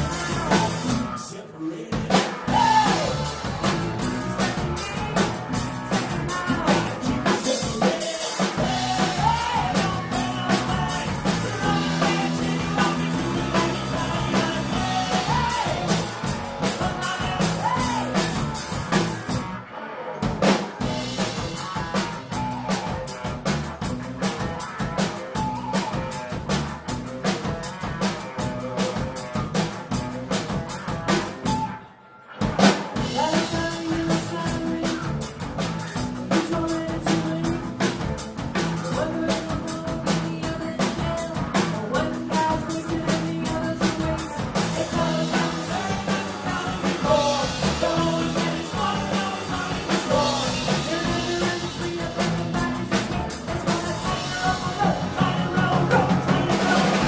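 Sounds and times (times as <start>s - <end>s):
drum kit pounding: 0.0s - 1.1s, 2.0s - 19.6s, 20.2s - 31.8s, 32.4s - 57.0s
person singing: 0.0s - 18.5s, 33.0s - 57.0s
guitars: 0.0s - 57.0s
live rock band playing: 0.0s - 57.0s.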